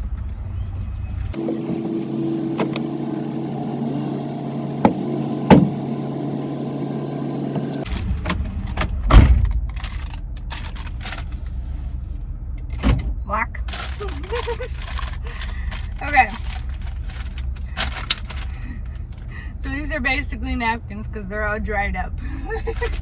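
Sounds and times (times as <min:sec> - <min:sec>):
steady hum: 0:01.4 - 0:08.0
heavy thump: 0:04.8 - 0:05.9.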